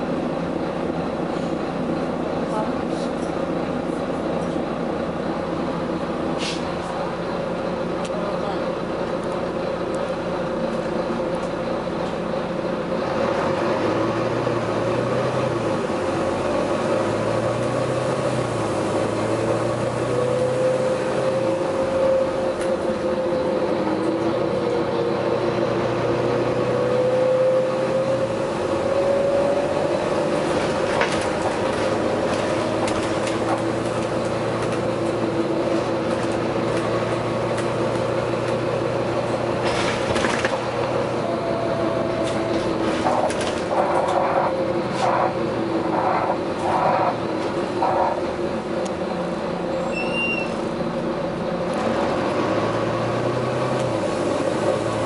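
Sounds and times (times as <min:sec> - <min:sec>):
vehicle drone with wavering whine: 0:39.3 - 0:51.8.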